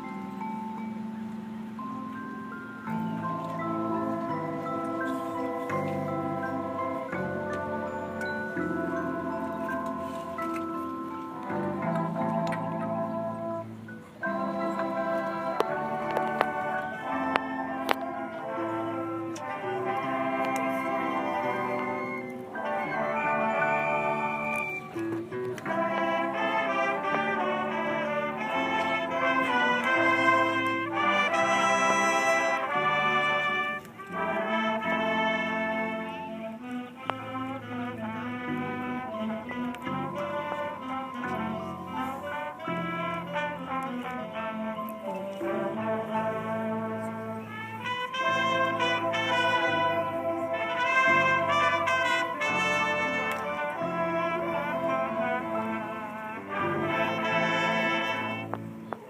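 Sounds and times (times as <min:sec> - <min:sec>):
brass section playing chords: 0:02.9 - 0:59.0.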